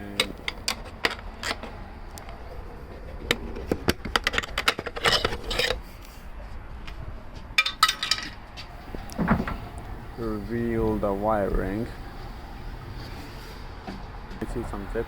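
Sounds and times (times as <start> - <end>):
metal parts clattering: 0.1 - 1.7, 4.0 - 5.8, 7.6 - 8.4
clicks knocks and scraping: 0.2 - 5.8, 7.6 - 9.8.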